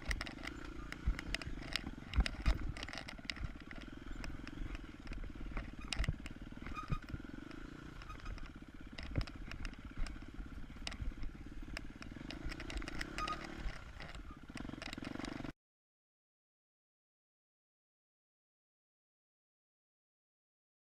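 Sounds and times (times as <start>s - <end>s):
knocks and clatter: 0.0s - 15.5s
motorcycle engine revving: 0.0s - 15.5s.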